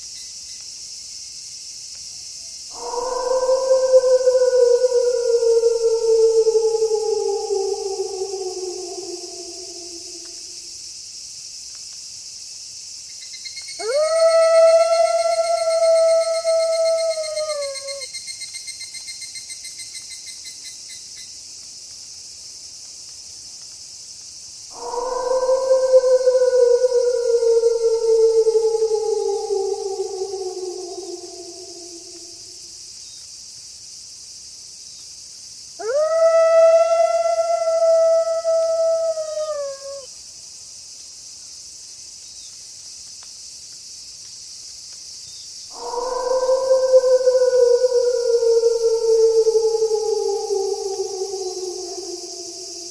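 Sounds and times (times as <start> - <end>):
crickets trilling: 0.0 - 52.9
insect chorus: 0.0 - 52.9
wolf howling: 2.7 - 10.7, 13.8 - 18.1, 24.7 - 32.7, 35.8 - 40.1, 45.7 - 52.9.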